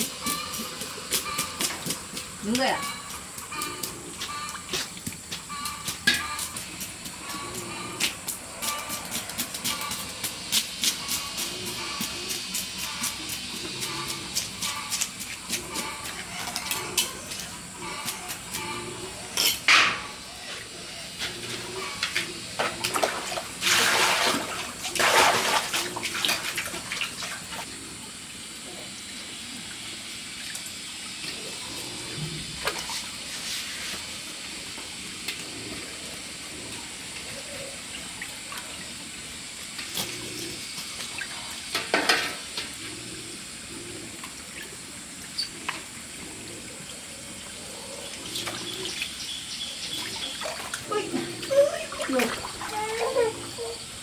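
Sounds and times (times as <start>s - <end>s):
water splashes: 22.0s - 27.7s, 32.4s - 34.3s, 44.2s - 54.0s.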